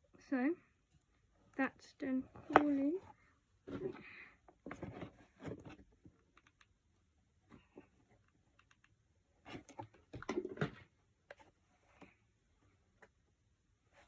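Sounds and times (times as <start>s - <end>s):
cardboard parts clicking and knocking: 2.4s - 3.0s, 9.5s - 11.5s.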